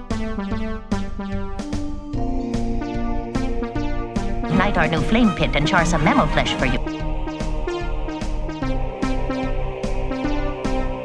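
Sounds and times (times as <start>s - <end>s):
synthesizer music: 4.5s - 6.8s.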